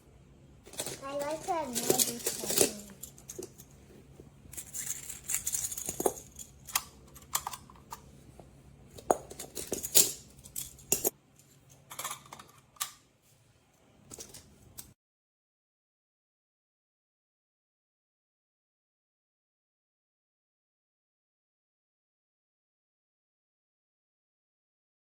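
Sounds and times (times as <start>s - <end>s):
toy blocks clacking: 0.7s - 3.7s, 4.5s - 8.0s, 9.0s - 11.1s.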